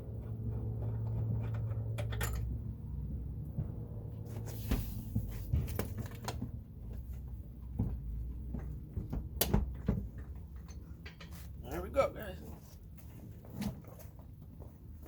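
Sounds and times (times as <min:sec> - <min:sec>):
metal clicks and knocks: 0:08.6 - 0:11.4.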